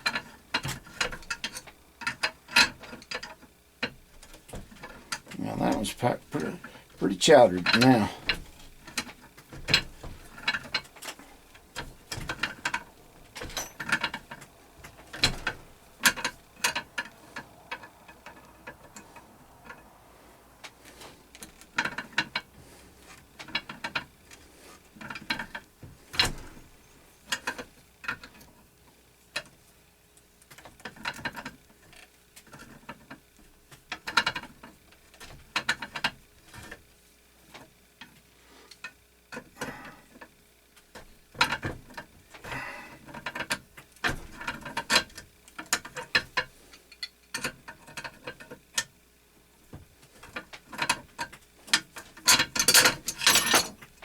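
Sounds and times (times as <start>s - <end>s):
hand tools clinking on metal: 5.4s - 8.4s, 12.3s - 19.8s, 52.2s - 53.9s.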